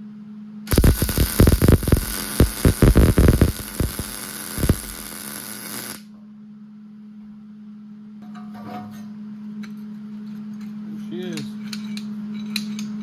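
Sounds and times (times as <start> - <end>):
welding arc crackling: 0.7 - 6.0
electrical hum: 0.7 - 6.1.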